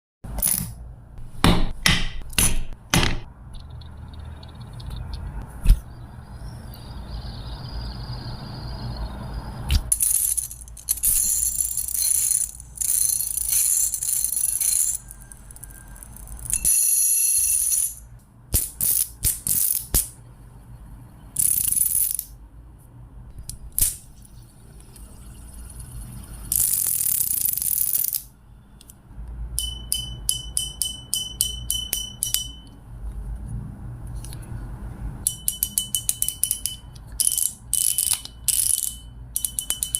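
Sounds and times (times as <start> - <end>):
mechanical ratcheting clicks: 26.5 - 28.3, 35.3 - 39.9.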